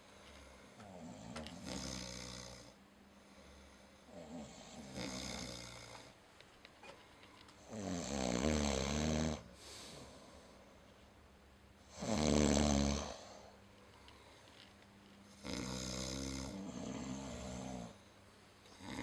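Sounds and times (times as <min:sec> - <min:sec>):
person snoring: 0:00.8 - 0:02.8, 0:03.4 - 0:06.1, 0:07.6 - 0:10.5, 0:11.9 - 0:13.6, 0:15.3 - 0:18.0, 0:18.7 - 0:19.0.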